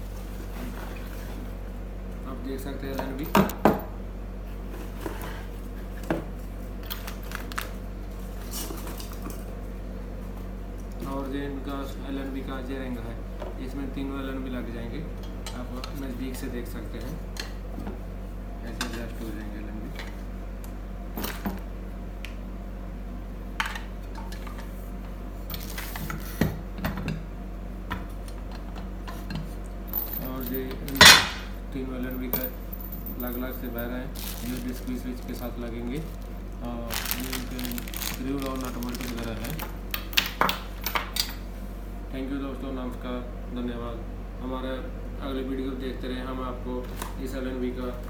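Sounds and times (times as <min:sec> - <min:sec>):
low electrical hum: 0:00.0 - 0:48.0
clicks and rustles of handling: 0:34.1 - 0:41.4.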